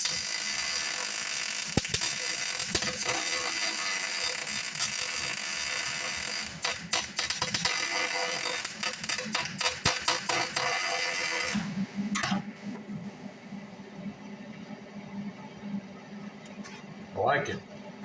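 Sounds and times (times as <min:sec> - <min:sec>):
welder arc crackling: 0:00.0 - 0:12.8.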